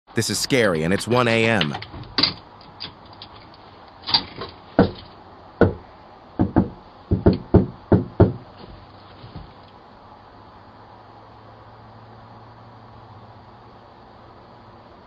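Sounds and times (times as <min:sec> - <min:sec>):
knocking on a door: 0:04.8 - 0:05.0, 0:05.6 - 0:05.8, 0:06.4 - 0:08.4.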